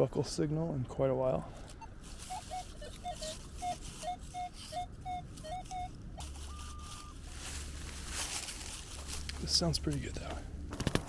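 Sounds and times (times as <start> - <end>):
metal detector beeping: 2.0 - 7.3.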